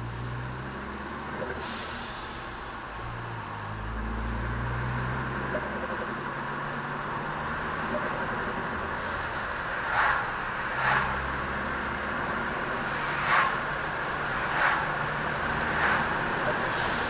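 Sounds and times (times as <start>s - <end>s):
car engine running: 4.8s - 16.8s.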